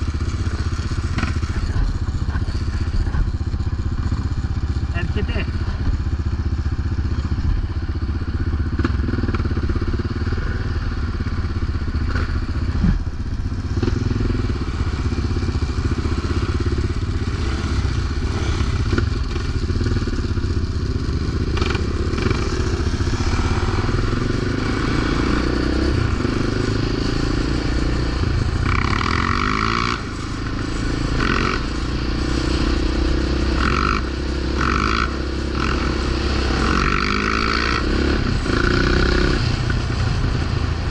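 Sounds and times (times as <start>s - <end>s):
clatter and scraping: 0.0s - 6.1s
quad bike engine revving: 0.0s - 40.9s.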